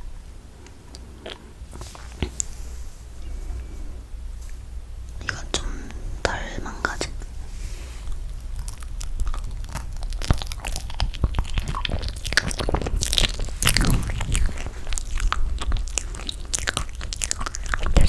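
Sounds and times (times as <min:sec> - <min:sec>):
chewing marshmallow: 0:00.9 - 0:02.5, 0:08.0 - 0:18.0.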